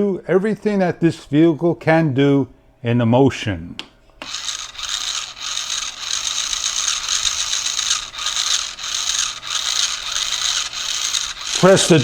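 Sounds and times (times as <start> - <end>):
toy truck motor whirring: 4.2 - 12.0.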